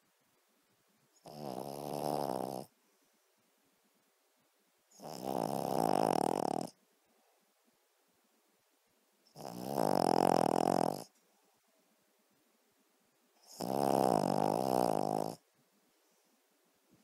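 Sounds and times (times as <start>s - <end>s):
dog snoring: 1.2s - 2.7s, 4.9s - 6.8s, 9.3s - 11.1s, 13.4s - 15.4s.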